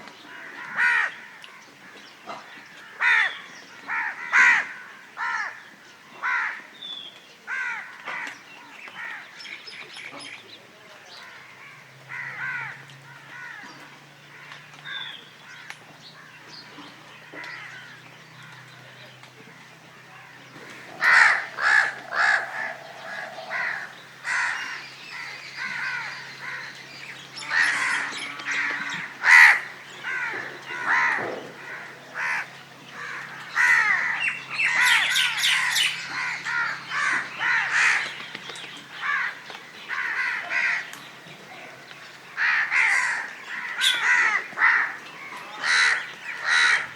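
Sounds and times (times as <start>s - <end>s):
crows cawing: 0.3s - 1.5s, 2.7s - 5.6s, 6.2s - 6.7s, 7.5s - 8.4s, 11.2s - 13.7s, 17.2s - 18.6s, 19.6s - 38.2s, 38.9s - 40.9s, 42.4s - 46.9s.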